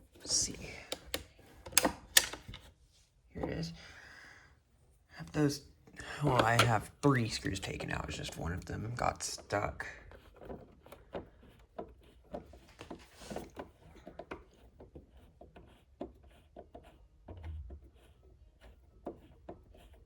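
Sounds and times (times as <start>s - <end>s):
screwdriver clicking and scraping: 0.3s - 2.7s, 6.2s - 7.6s.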